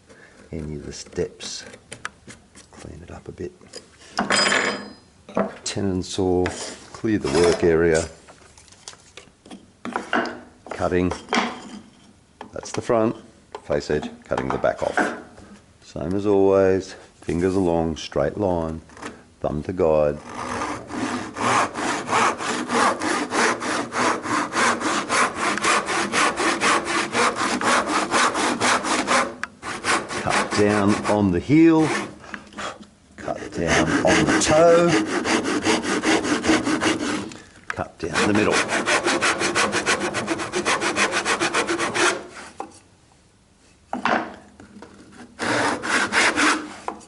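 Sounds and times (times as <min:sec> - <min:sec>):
hand saw cutting timber: 0:06.5 - 0:08.1, 0:20.2 - 0:37.4, 0:38.1 - 0:42.6, 0:45.2 - 0:47.0.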